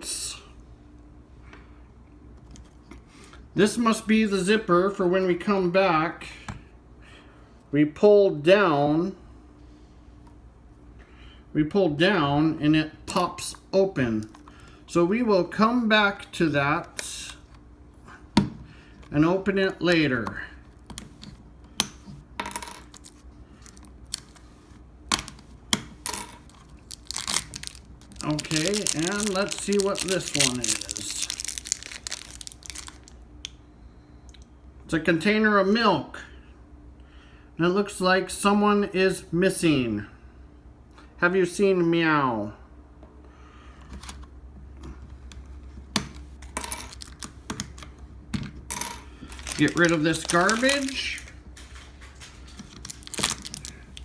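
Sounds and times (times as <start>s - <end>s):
wrapping rustling: 22.9s - 24.8s, 26.4s - 33.2s, 46.9s - 47.3s, 49.2s - 54.0s
plastic packaging clicking: 26.5s - 33.2s, 49.3s - 54.0s.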